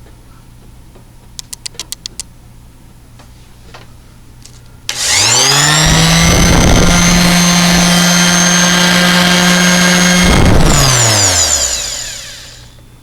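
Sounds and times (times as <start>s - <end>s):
orbital sander motor whine: 4.9s - 12.8s.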